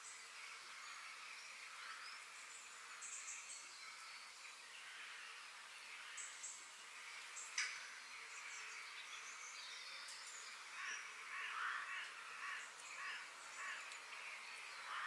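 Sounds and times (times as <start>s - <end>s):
birds chirping: 0.0s - 15.0s
rough bird calls: 10.4s - 15.0s.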